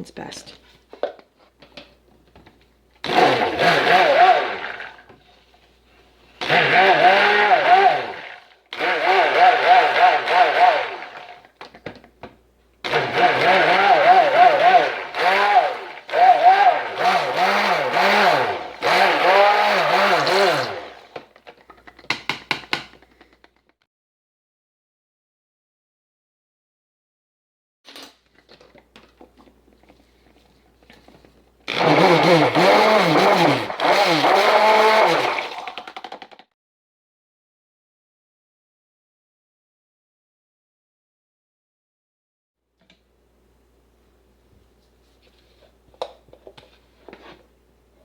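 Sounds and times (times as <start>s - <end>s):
stick blender running: 3.0s - 5.2s, 6.4s - 11.5s, 12.8s - 21.5s, 31.7s - 36.4s.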